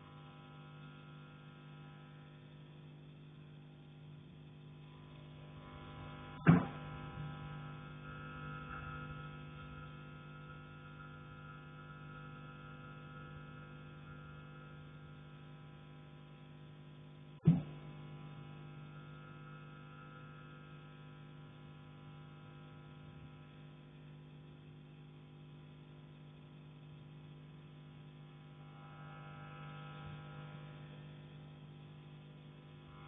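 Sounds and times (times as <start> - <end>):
steady low hum: 0.0 - 16.4
knocks on metal heating pipe: 6.4 - 6.8.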